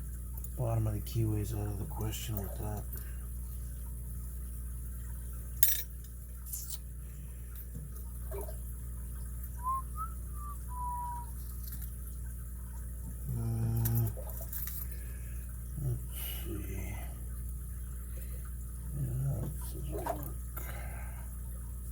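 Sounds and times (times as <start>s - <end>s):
short low hum: 0.0s - 21.9s
faint whistle-like tone: 9.6s - 11.4s.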